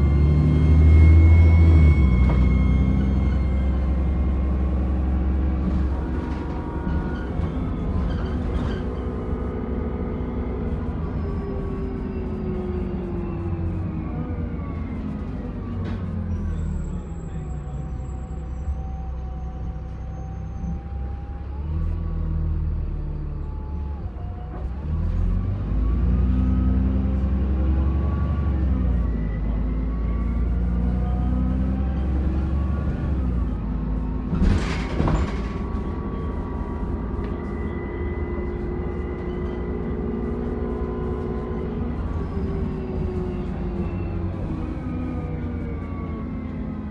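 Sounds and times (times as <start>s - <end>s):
bus diesel engine rumble: 0.0s - 46.9s
turbo whine: 28.9s - 46.0s.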